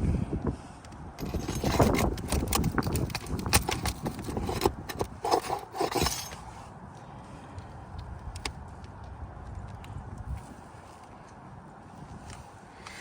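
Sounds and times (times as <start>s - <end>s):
metal tool scraping shingles: 1.2s - 6.4s
nails pried out of shingle: 1.2s - 6.5s.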